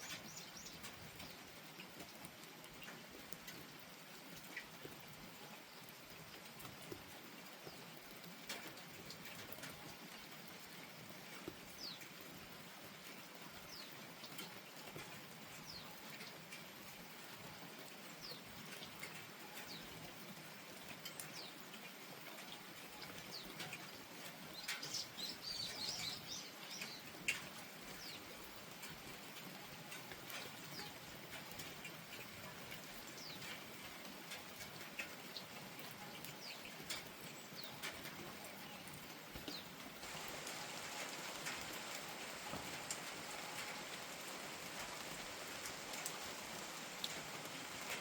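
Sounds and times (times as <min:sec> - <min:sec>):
light rain: 0:00.0 - 0:48.0
sharp drips: 0:00.0 - 0:48.0
bird chirping and twittering: 0:24.5 - 0:27.1.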